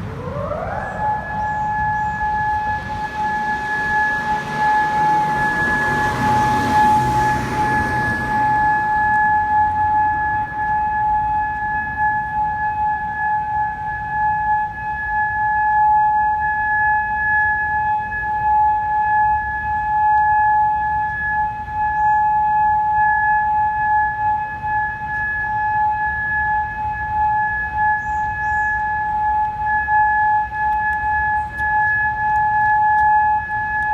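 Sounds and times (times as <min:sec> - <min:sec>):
low rumble: 0:00.0 - 0:13.9
steady warning siren tone: 0:00.0 - 0:33.9.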